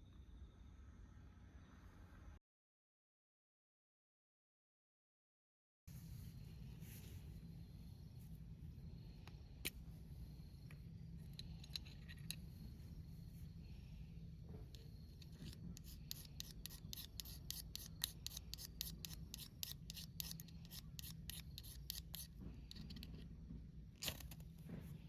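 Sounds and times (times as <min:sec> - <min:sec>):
steady low rumble: 0:05.9 - 0:16.7.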